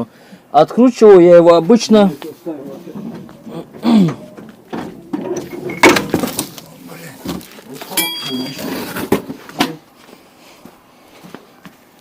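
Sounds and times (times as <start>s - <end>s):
metal tools clinking: 7.8s - 9.0s
metallic ring: 7.9s - 8.9s.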